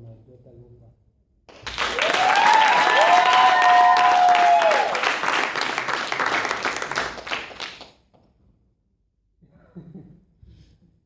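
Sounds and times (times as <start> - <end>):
congregation clapping: 1.5 - 8.0.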